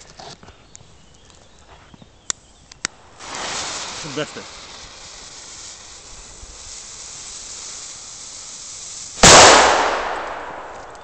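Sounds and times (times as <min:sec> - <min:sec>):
faint steady hiss: 0:00.4 - 0:11.0
firecracker bang: 0:09.1 - 0:11.0.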